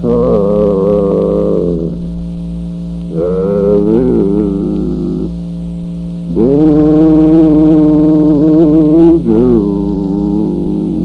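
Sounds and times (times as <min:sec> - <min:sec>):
steady recording hum: 0:00.0 - 0:11.0
man singing: 0:06.3 - 0:11.0.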